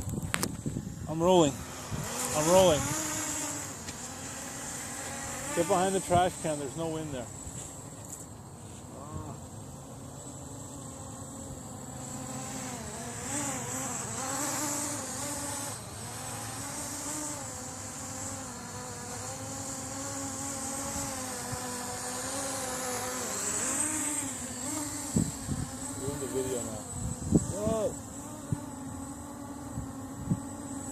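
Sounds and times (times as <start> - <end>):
gusty wind: 0.0 - 2.9, 25.1 - 26.2, 26.9 - 29.0
quadcopter propellers buzzing: 0.0 - 30.9.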